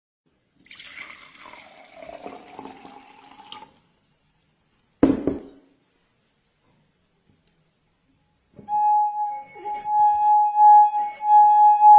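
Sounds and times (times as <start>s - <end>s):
water pouring into container: 0.6s - 3.9s.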